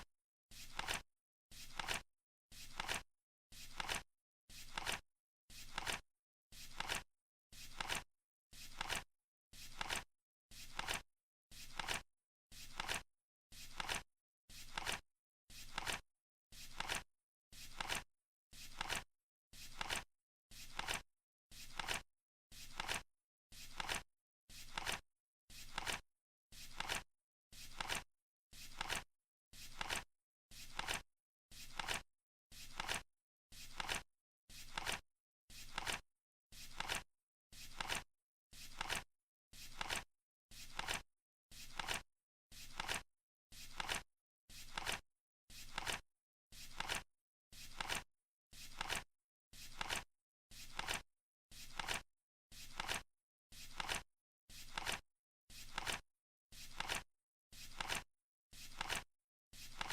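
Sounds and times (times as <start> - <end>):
flip clock card flapping: 0.7 - 1.0, 1.7 - 2.0, 2.7 - 3.0, 3.7 - 4.0, 4.6 - 5.0, 5.7 - 6.0, 6.7 - 7.0, 7.7 - 8.0, 8.7 - 9.0, 9.7 - 10.0, 10.7 - 11.0, 11.7 - 12.0, 12.7 - 13.0, 13.7 - 14.0, 14.7 - 15.0, 15.7 - 16.0, 16.7 - 17.0, 17.7 - 18.0, 18.7 - 19.0, 19.7 - 20.0, 20.7 - 21.0, 21.7 - 22.0, 22.7 - 23.0, 23.7 - 24.0, 24.7 - 25.0, 25.7 - 26.0, 26.7 - 27.0, 27.7 - 28.0, 28.7 - 29.0, 29.7 - 30.0, 30.7 - 31.0, 31.7 - 32.0, 32.7 - 33.0, 33.7 - 34.0, 34.7 - 35.0, 35.7 - 36.0, 36.7 - 37.0, 37.7 - 38.0, 38.7 - 39.0, 39.7 - 40.0, 40.7 - 41.0, 41.7 - 42.0, 42.7 - 43.0, 43.7 - 44.0, 44.7 - 45.0, 45.7 - 46.0, 46.7 - 47.0, 47.7 - 48.0, 48.7 - 49.0, 49.7 - 50.0, 50.7 - 51.0, 51.7 - 52.0, 52.7 - 53.0, 53.7 - 54.0, 54.7 - 55.0, 55.7 - 56.0, 56.7 - 57.0, 57.7 - 58.0, 58.7 - 59.0, 59.7 - 59.9.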